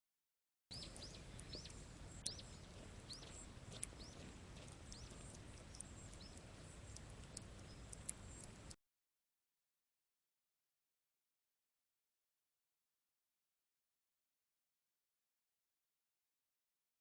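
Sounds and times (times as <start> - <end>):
small birds chirping: 0.7 - 8.8.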